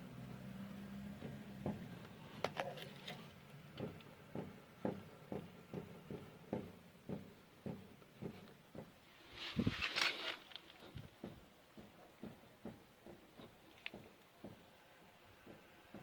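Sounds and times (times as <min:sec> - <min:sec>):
car suspension knocking: 0:01.1 - 0:02.7, 0:03.7 - 0:09.0, 0:10.9 - 0:14.7, 0:15.4 - 0:16.0.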